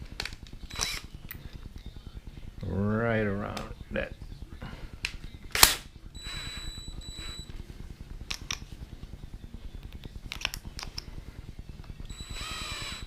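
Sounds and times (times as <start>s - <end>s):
low hum: 0.0s - 13.0s
drill motor whining: 0.6s - 1.4s, 6.2s - 7.6s, 11.5s - 13.0s
sharp metal clicks: 9.8s - 11.1s.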